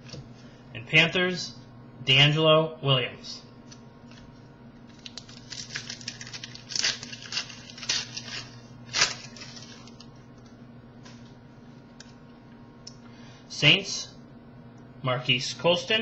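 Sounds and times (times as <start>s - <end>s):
steady low hum: 0.0s - 16.0s
trading cards rustling: 4.9s - 10.1s.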